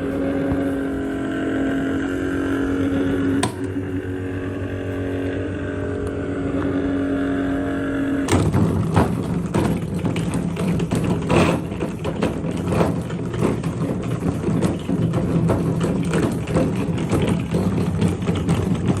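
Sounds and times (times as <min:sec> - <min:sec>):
electric fan humming: 0:00.0 - 0:19.0
fan rattling clicks: 0:03.0 - 0:04.1, 0:08.2 - 0:19.0.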